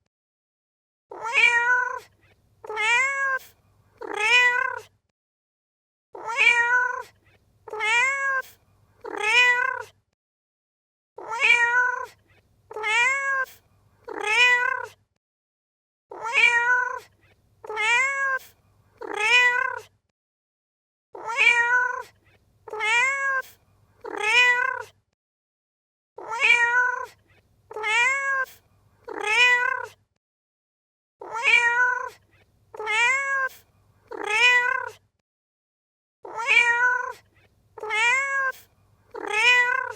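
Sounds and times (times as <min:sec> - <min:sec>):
cat meowing: 0:01.1 - 0:04.9, 0:06.2 - 0:07.1, 0:07.7 - 0:09.9, 0:11.2 - 0:15.0, 0:16.1 - 0:19.9, 0:21.2 - 0:24.9, 0:26.2 - 0:30.0, 0:31.2 - 0:35.0, 0:36.3 - 0:39.9.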